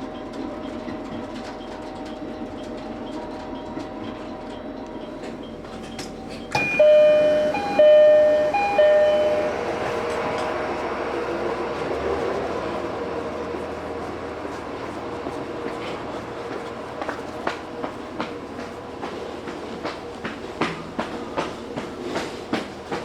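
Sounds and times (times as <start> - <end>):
train jolt: 0.0 - 23.0
train running: 0.0 - 23.0
two-note electronic chime: 6.6 - 9.7.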